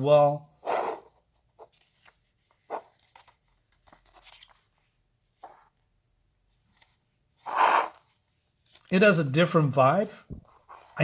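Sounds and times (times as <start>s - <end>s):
paper pages rustling: 0.8s - 5.9s, 6.5s - 9.2s, 10.3s - 11.0s.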